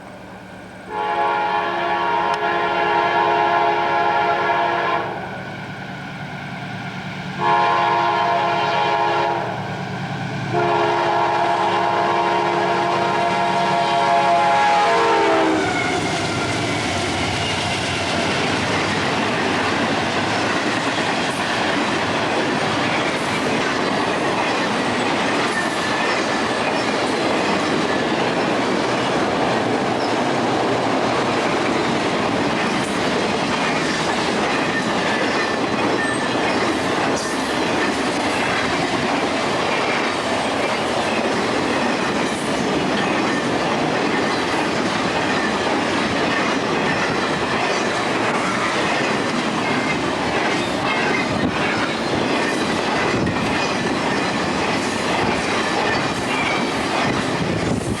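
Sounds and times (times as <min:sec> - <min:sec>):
train horn: 0:00.9 - 0:05.8, 0:07.4 - 0:18.5
train wheels clicking on rails: 0:05.6 - 0:58.0.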